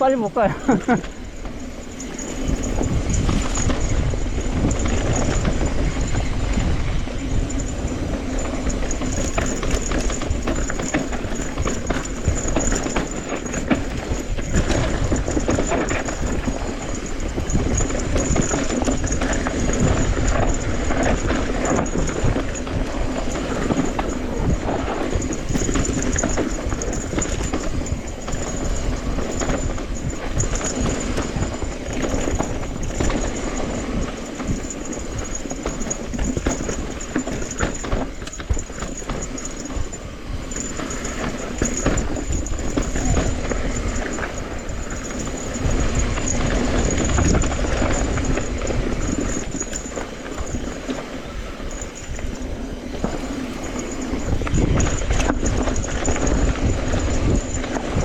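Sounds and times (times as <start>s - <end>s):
bike rattling over rough trail: 0.0s - 58.0s
tyre rumble: 7.7s - 52.4s.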